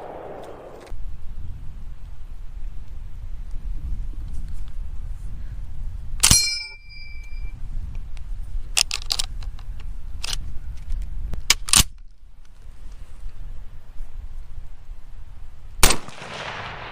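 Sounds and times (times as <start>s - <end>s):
lighter sharp cracks: 0.0s - 0.9s, 15.8s - 16.9s
steady low rumble: 0.0s - 4.1s, 15.8s - 16.9s.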